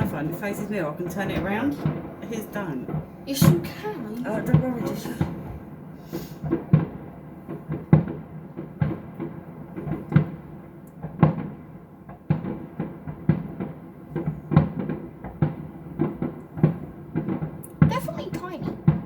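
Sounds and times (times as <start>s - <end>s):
fireworks thuds and bangs: 0.0s - 19.0s.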